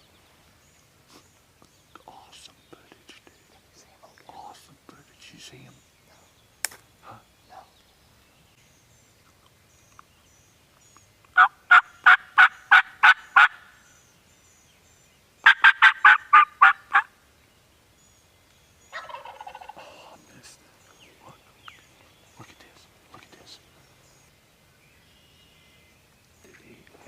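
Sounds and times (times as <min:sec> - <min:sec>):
songbirds chirping: 0:00.0 - 0:27.0
turkey call yelps: 0:11.4 - 0:13.7, 0:15.4 - 0:17.1, 0:18.9 - 0:20.0
wild turkey gobble: 0:11.4 - 0:13.7, 0:15.4 - 0:17.1, 0:18.9 - 0:20.2.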